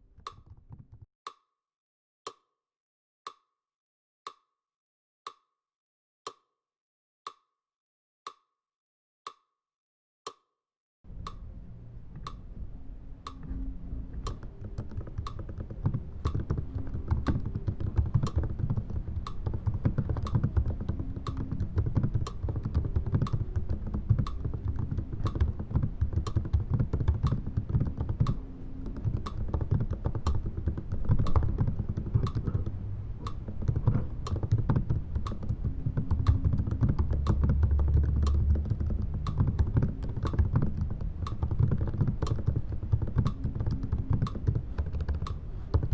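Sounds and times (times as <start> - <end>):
typing on computer keyboard: 14.1 - 45.9.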